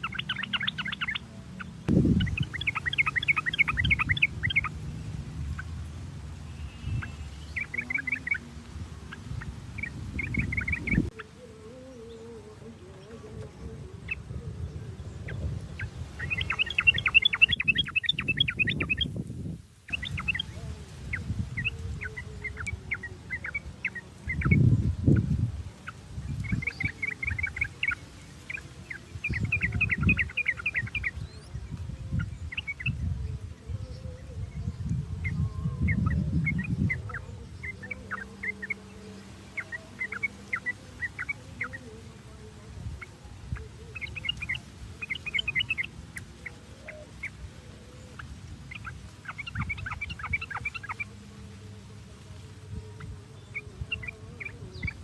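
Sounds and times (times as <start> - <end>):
birds chattering: 0.0 - 19.2, 19.9 - 55.0
low rumbling: 0.0 - 44.0.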